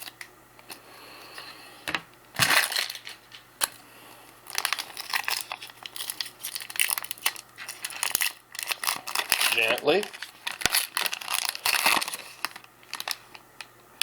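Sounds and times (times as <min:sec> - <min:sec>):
wrapper crinkling and tearing: 0:02.4 - 0:03.4, 0:04.4 - 0:13.7.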